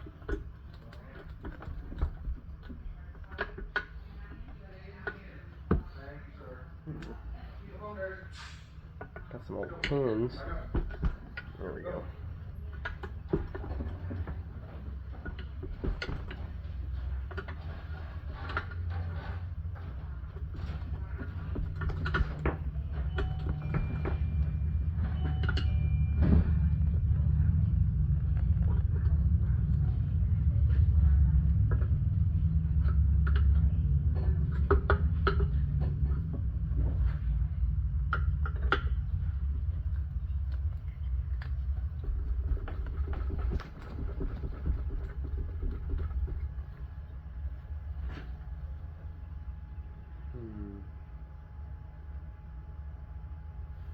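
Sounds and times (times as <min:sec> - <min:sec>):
steady low rumble: 0:00.0 - 0:53.9.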